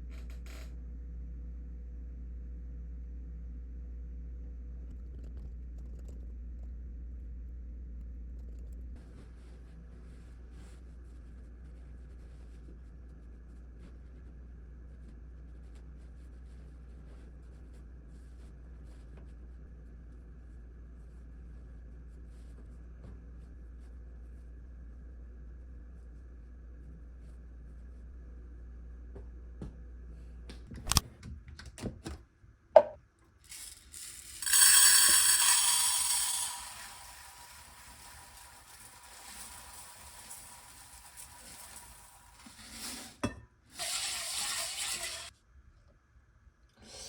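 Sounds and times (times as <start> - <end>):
loud sizzling from hot pan: 33.5 - 43.2, 43.8 - 45.3.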